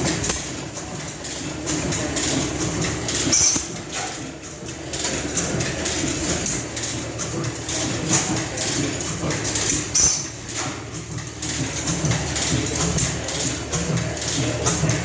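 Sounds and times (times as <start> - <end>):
old machinery clattering: 0.0 - 15.0.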